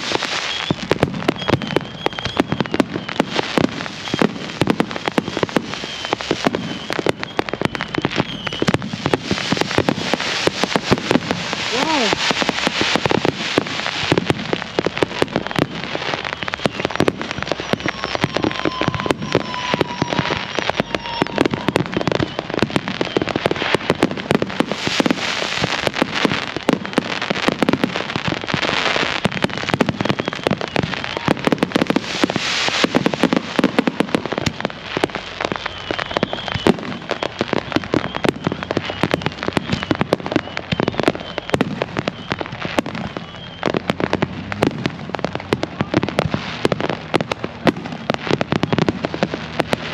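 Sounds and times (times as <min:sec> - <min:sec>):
fireworks crackling and popping: 0:00.0 - 0:49.9
faint whistle: 0:00.4 - 0:03.2, 0:04.0 - 0:04.4, 0:05.8 - 0:08.8, 0:15.4 - 0:23.4, 0:30.0 - 0:31.5, 0:35.5 - 0:43.8.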